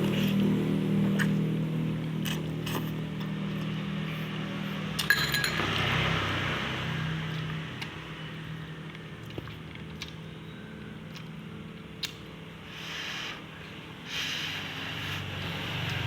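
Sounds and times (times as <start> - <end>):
low engine hum: 0.0 - 5.0
utensil clinking against crockery: 5.0 - 5.8.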